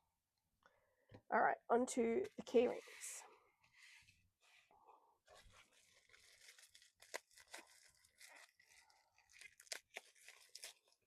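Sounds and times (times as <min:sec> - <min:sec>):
packaging crinkling and tearing: 0:05.4 - 0:11.0.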